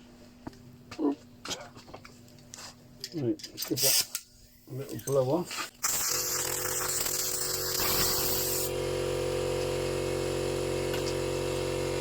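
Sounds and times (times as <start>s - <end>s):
air blower motor hum: 6.2s - 12.0s.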